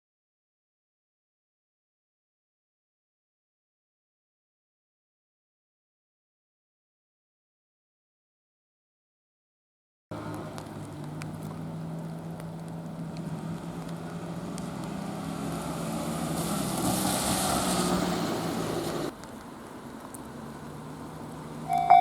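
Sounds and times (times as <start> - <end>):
low vehicle engine hum: 10.1 - 22.0.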